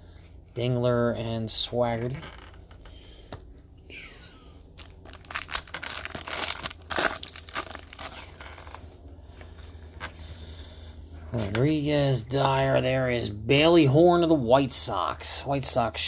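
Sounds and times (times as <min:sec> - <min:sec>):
low steady hum: 0:00.0 - 0:16.0
foil pack tearing and crinkling: 0:04.8 - 0:08.8.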